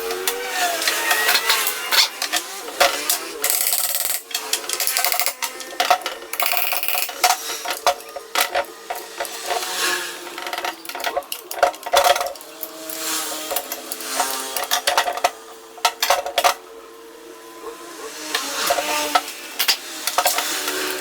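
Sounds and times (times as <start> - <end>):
metal tools clinking: 0.0 - 16.6.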